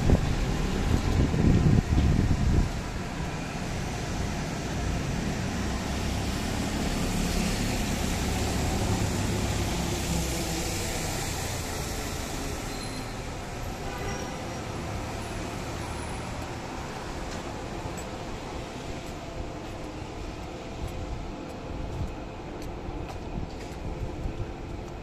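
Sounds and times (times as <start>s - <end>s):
vehicles passing: 0.0s - 24.8s
steady traffic hiss: 0.0s - 25.0s.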